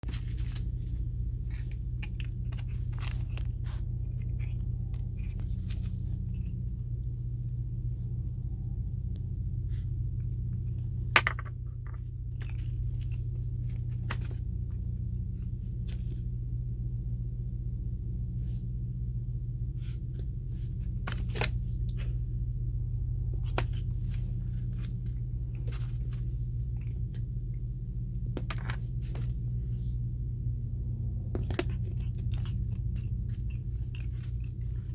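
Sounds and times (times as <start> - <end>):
steady low drone: 0.0 - 34.9
puppy chewing: 0.1 - 16.3, 23.2 - 29.6, 31.2 - 34.9.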